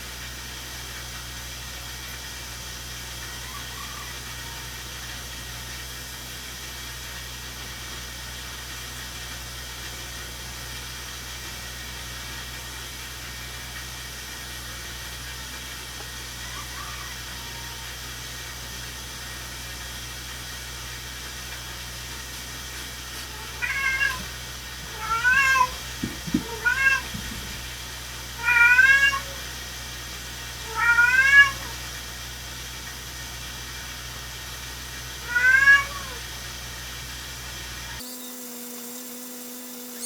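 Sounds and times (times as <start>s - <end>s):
animal calling: 16.0s - 18.0s, 23.2s - 27.7s
soft knocks: 24.8s - 27.7s.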